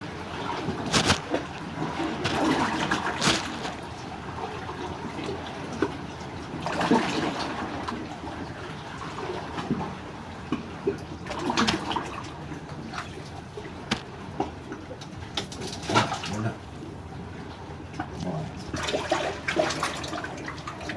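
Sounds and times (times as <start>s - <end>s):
sea water washing among stones: 0.2s - 5.8s, 11.3s - 14.5s.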